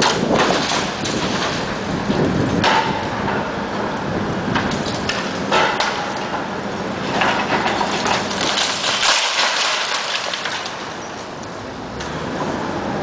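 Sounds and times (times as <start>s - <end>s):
bricks and rubble crashing: 0.0s - 3.4s, 4.6s - 11.2s
machine rumble: 0.0s - 13.0s.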